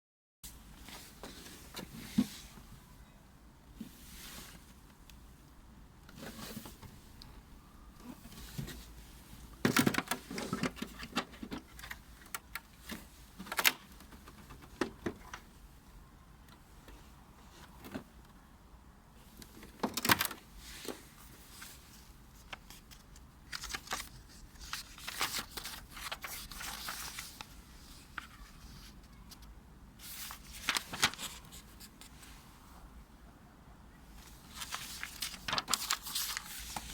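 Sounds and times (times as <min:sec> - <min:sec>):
packaging rustling and crinkling: 0:22.4 - 0:27.6, 0:30.0 - 0:32.0, 0:34.4 - 0:36.9.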